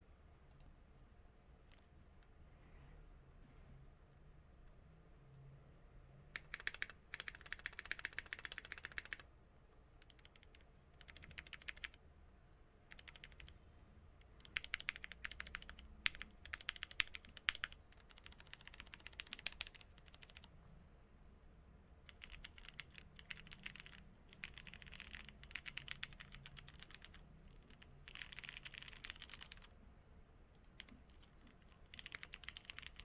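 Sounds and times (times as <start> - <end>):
typing on mechanical keyboard: 6.4 - 9.3, 10.0 - 12.0, 12.9 - 13.6, 14.4 - 20.5, 22.1 - 29.7, 30.6 - 33.0.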